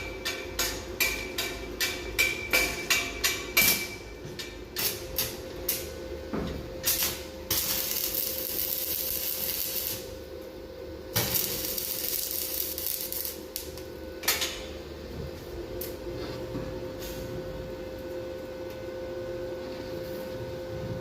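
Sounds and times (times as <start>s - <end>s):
steady hum: 0.0s - 21.0s
welding arc crackling and hissing: 6.8s - 10.3s, 11.1s - 14.6s.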